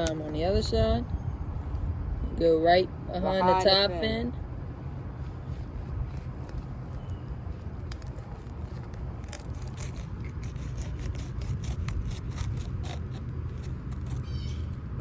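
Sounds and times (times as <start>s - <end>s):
knife scraping fish: 7.9s - 14.3s.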